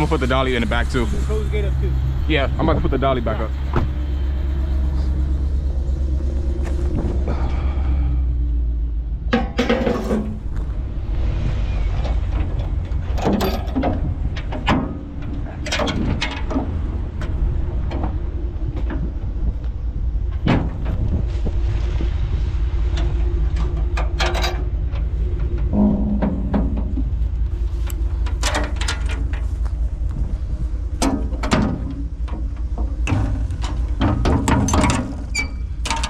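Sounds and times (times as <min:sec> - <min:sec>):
engine low rumble: 0:00.0 - 0:36.0
equipment clanks and bangs: 0:09.2 - 0:10.7, 0:11.9 - 0:36.0.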